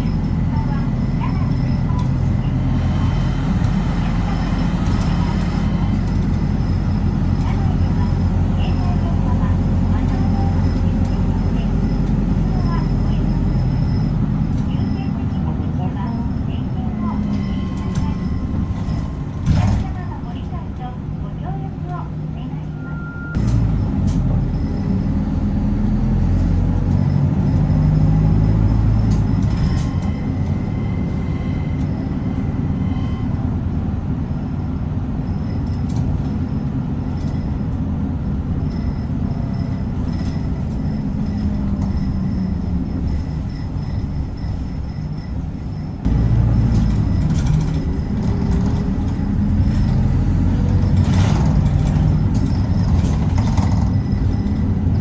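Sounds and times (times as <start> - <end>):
rattles: 0.0 - 20.8, 35.2 - 55.0
bus engine: 0.0 - 55.0
road noise: 0.0 - 55.0.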